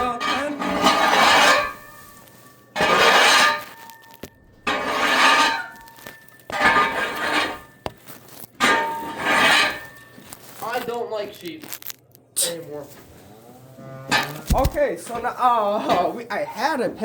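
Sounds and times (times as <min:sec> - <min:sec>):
scraping with metallic ring: 0:00.0 - 0:10.7.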